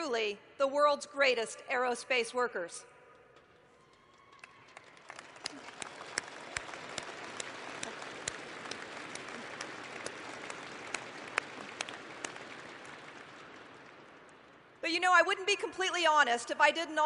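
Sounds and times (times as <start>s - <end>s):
large crowd applauding: 3.7s - 14.7s.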